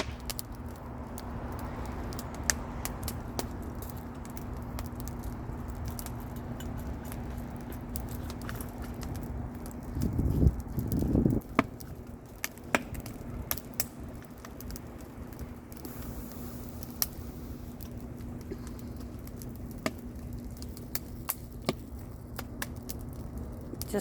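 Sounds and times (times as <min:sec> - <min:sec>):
campfire crackling and popping: 0:00.0 - 0:24.0.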